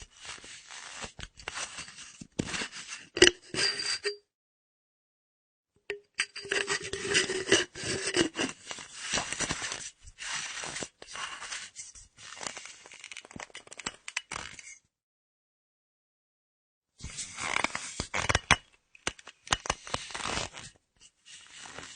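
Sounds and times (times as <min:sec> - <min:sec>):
metal screw cap scraping and clicking: 0:01.4 - 0:04.2, 0:05.9 - 0:09.6, 0:12.6 - 0:14.8, 0:17.5 - 0:20.0.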